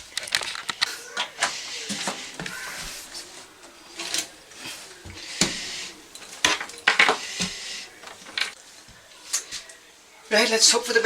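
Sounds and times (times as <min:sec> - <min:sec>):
scraping and rubbing: 0:00.0 - 0:08.6.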